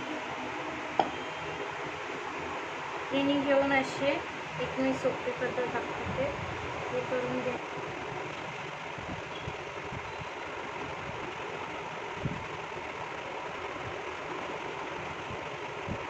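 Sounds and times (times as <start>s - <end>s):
steady background noise: 0.0s - 16.0s
soft knock: 1.0s - 1.2s.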